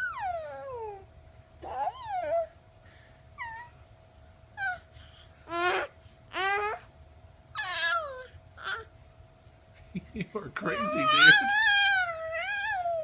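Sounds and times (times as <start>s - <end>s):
baby babbling in high squeals: 1.6s - 2.5s.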